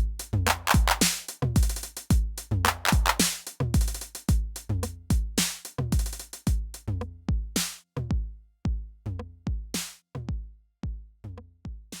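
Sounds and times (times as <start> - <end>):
drum machine beat: 0.0 - 8.9, 11.7 - 12.0
deep kick drums: 0.0 - 11.1.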